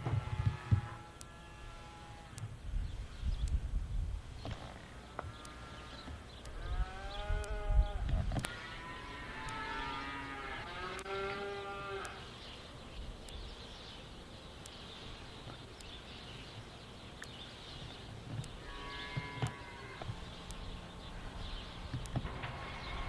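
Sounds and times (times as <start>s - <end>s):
low microphone rumble: 2.5s - 4.6s, 6.5s - 8.4s
cattle mooing: 6.6s - 12.2s, 18.6s - 20.1s.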